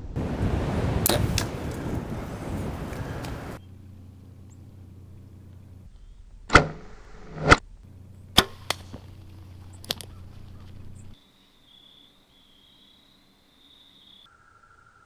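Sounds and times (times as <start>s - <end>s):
insects chirring: 0.0s - 3.6s, 8.7s - 14.8s
sharp snaps: 0.0s - 3.6s
arrow loosed and striking: 0.5s - 3.6s, 8.4s - 10.2s.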